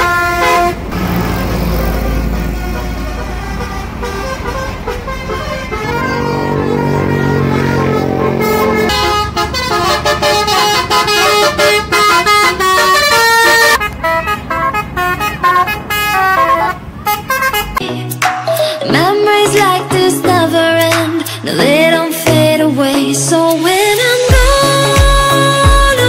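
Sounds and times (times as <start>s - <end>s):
bus musical horn playing tune: 0.0s - 17.8s.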